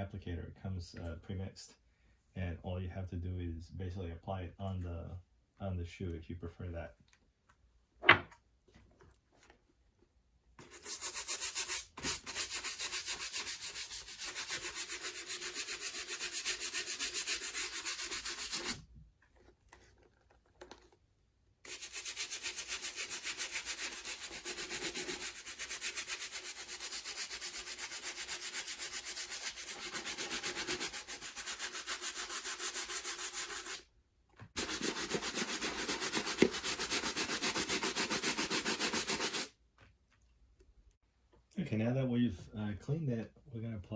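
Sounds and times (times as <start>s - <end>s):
brush scrubbing leather boot: 21.7s - 33.8s, 34.6s - 39.5s.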